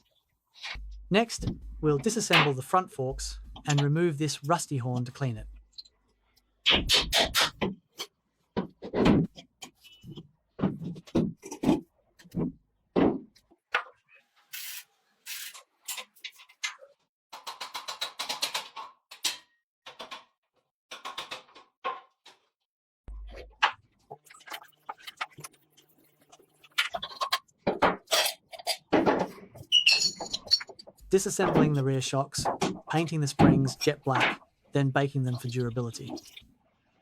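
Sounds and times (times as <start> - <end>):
tools knocking and clanking metal: 27.6 - 34.4.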